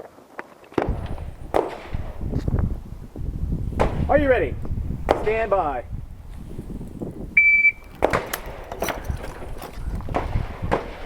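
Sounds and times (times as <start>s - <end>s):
shot timer start beep: 7.4s - 7.9s.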